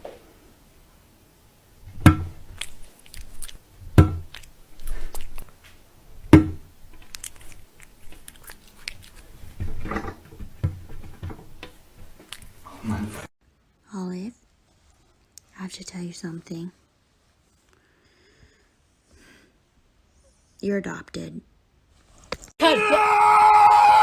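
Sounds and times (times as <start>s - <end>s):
loud knocks: 1.9s - 2.5s, 3.8s - 4.4s, 6.3s - 6.7s.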